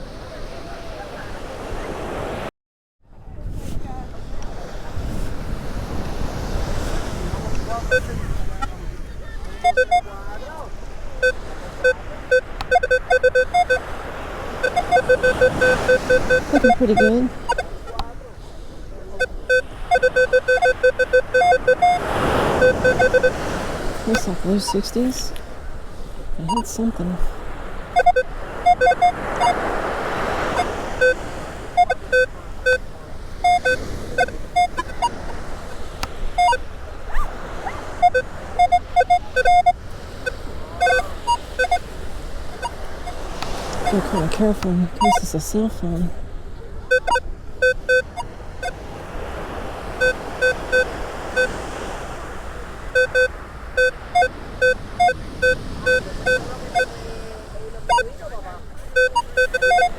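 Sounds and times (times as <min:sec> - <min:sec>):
surf: 0:03.2 - 0:59.9
metal detector beeps: 0:07.8 - 0:08.7, 0:09.5 - 0:10.1, 0:11.2 - 0:13.9, 0:14.6 - 0:18.1, 0:19.2 - 0:25.3, 0:26.4 - 0:27.1, 0:28.0 - 0:29.7, 0:30.4 - 0:35.4, 0:36.0 - 0:41.9, 0:42.5 - 0:45.9, 0:46.9 - 0:48.8, 0:50.0 - 0:51.6, 0:52.9 - 0:57.0, 0:57.9 - 0:58.2, 0:58.8 - 0:59.9.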